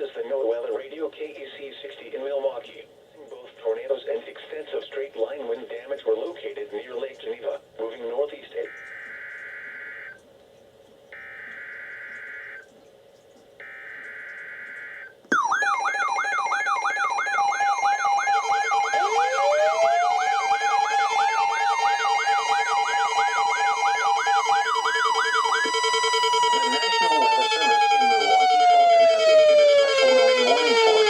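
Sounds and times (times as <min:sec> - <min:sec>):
fast warbling siren tone: 0:08.7 - 0:10.2, 0:13.6 - 0:31.0
steady alarm tone: 0:08.7 - 0:10.2, 0:11.1 - 0:12.7, 0:13.6 - 0:31.0
tone sliding upward: 0:15.3 - 0:31.0
buzzy two-tone data signal: 0:18.3 - 0:28.3.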